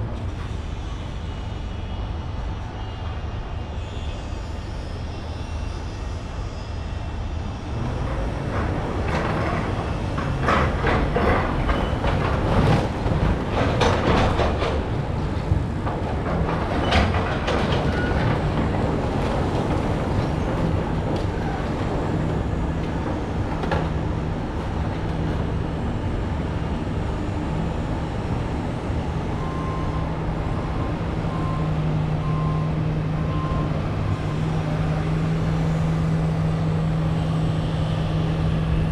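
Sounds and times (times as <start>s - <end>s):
metallic clanking and knocking: 8.4s - 24.0s.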